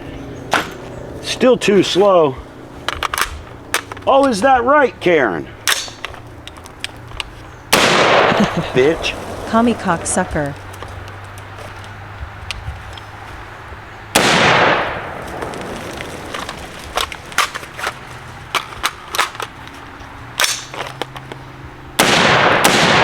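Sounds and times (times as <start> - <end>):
sharp clicks and cracks: 2.8 - 4.5, 5.6 - 9.5, 14.2 - 21.4
rifle gunshots: 7.7 - 10.4, 14.1 - 16.8, 22.0 - 23.0.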